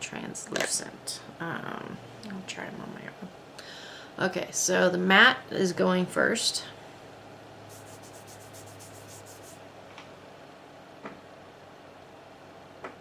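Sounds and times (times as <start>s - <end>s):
powder rubbed onto skin: 7.7s - 9.6s.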